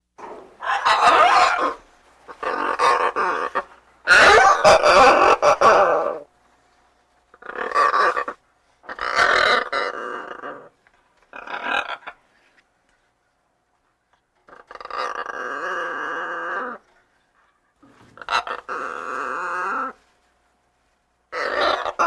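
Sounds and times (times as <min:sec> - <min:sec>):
parrot squawking: 0:00.6 - 0:06.3, 0:07.4 - 0:10.7, 0:11.3 - 0:12.3, 0:18.0 - 0:20.0, 0:21.3 - 0:22.0.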